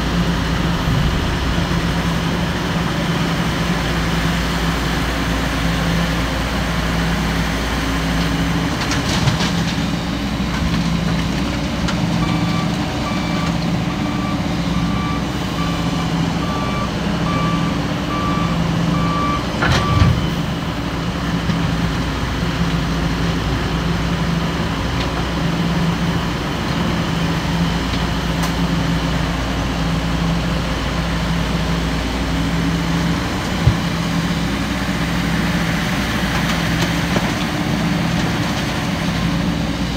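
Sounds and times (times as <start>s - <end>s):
low pulsing tone: 0.0s - 3.7s
diesel machinery running: 0.0s - 39.9s.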